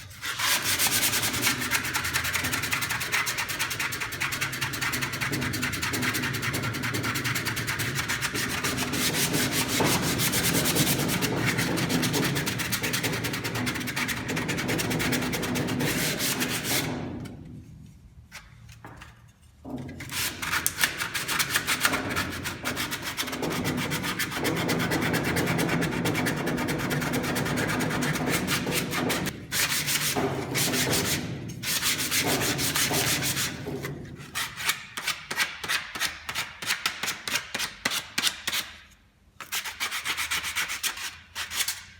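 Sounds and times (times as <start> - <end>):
sandpaper rubbing on wood: 0.2 - 16.9.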